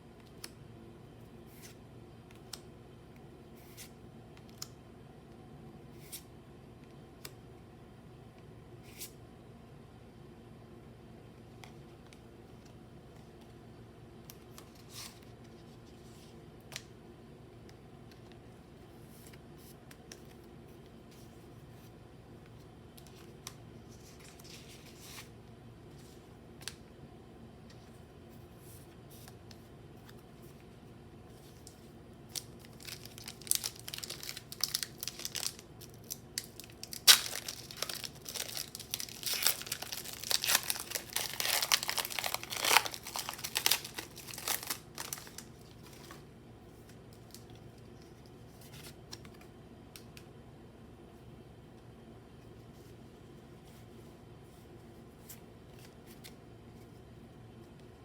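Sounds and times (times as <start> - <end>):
foil wrapper tearing and crinkling: 32.3 - 46.2.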